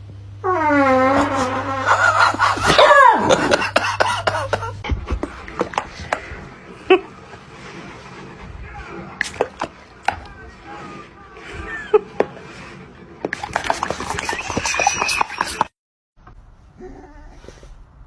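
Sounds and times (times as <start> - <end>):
pet's long wavering cry: 0.4 - 3.4.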